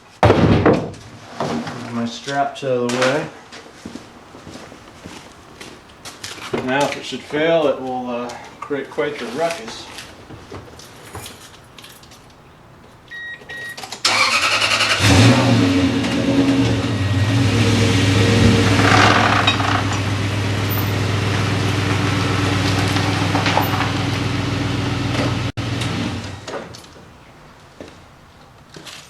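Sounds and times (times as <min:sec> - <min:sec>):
truck engine starting and running: 0:13.1 - 0:27.0.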